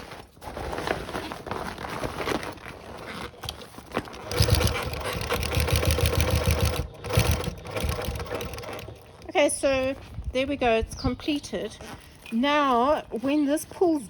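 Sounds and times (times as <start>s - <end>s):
sewing machine stitching: 3.4s - 9.4s.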